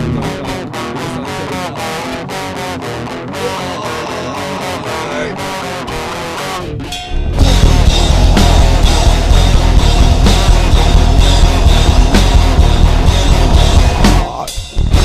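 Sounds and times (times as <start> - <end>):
electric guitar riff: 0.0 - 15.0
punk band playing: 0.0 - 15.0.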